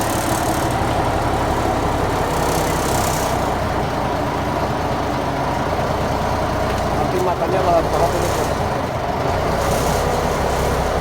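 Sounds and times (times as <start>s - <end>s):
grinding machine engine running: 0.0s - 4.4s, 7.7s - 11.0s.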